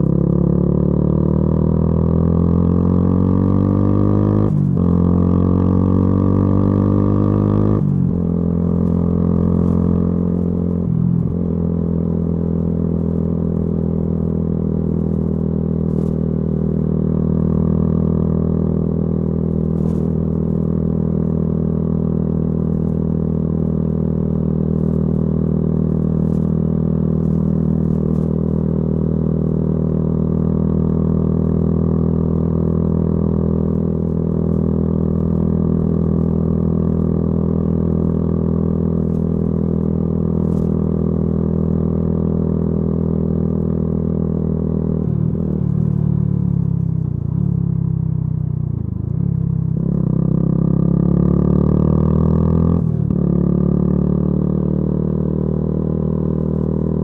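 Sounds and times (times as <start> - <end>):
motorcycle engine revving: 0.0 - 57.0.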